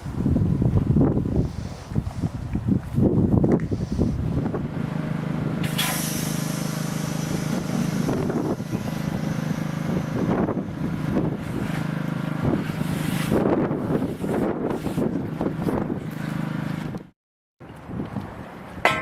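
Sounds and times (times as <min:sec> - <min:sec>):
machine motor humming: 0:04.7 - 0:12.6
hissing noise: 0:05.6 - 0:10.8.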